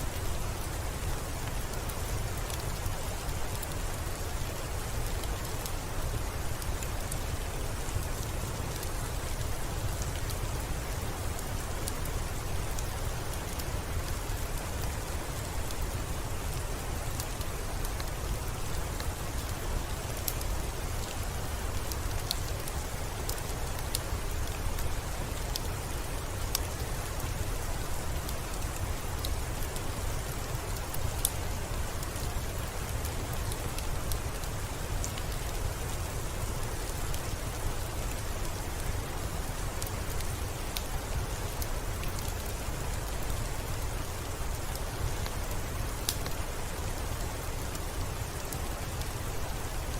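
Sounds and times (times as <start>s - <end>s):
steady rain falling: 0.0s - 49.9s
wood fire crackling and popping: 11.3s - 38.6s, 39.8s - 49.8s.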